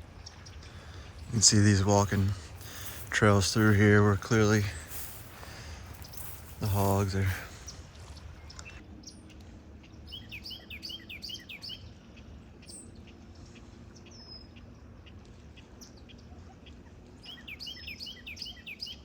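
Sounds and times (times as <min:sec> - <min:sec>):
small bird chirping: 0:04.5 - 0:08.8.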